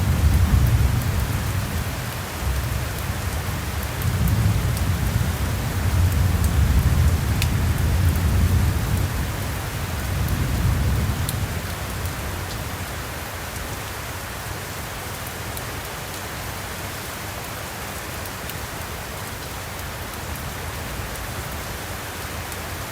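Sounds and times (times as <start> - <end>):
thunder rumble: 0.0 - 2.8
heavy rain: 0.0 - 22.9.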